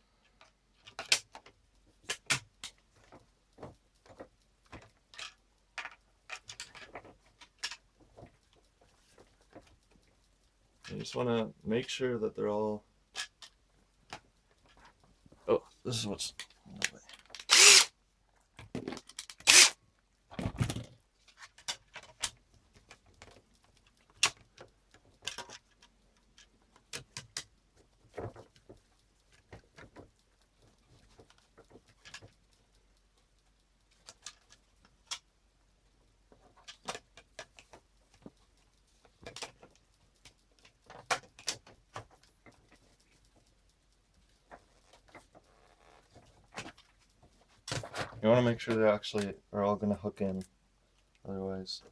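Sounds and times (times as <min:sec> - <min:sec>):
ski binding parts clicking: 0:17.3 - 0:17.9, 0:19.1 - 0:19.8.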